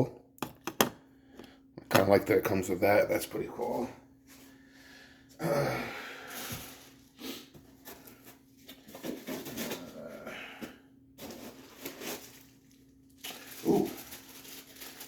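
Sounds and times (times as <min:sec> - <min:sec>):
faint steady hum: 0:00.0 - 0:15.0
packaging rustling: 0:11.2 - 0:15.0.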